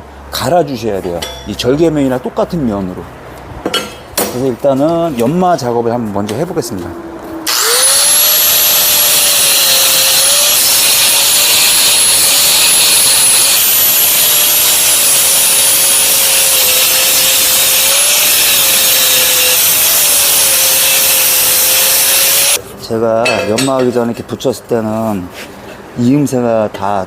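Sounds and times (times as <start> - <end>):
electric grinder motor whine: 7.5 - 22.6
grinding hiss on steel: 8.0 - 22.6.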